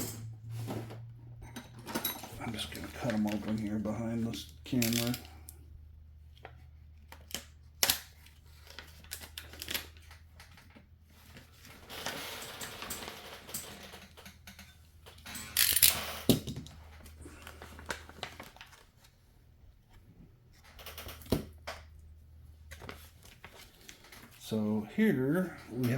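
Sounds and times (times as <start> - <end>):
rustling and crinkling: 2.2 - 5.5, 6.2 - 14.0, 16.7 - 24.6.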